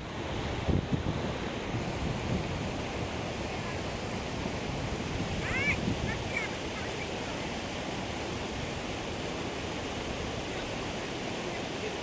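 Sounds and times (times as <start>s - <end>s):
wind buffeting microphone: 0.2s - 6.8s
waterfall rushing: 5.1s - 12.0s.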